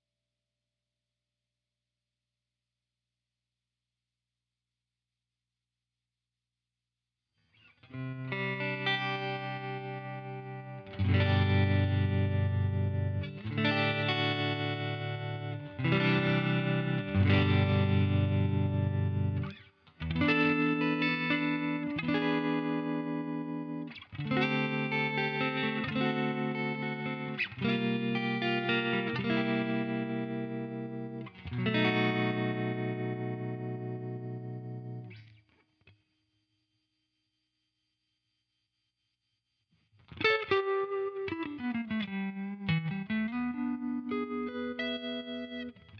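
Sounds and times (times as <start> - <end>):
electric guitar chords ringing: 7.9 - 35.2, 40.1 - 45.9.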